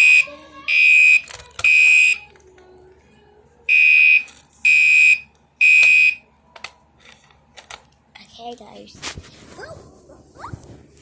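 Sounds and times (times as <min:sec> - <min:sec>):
fire alarm horn beeps: 0:03.7 - 0:06.2.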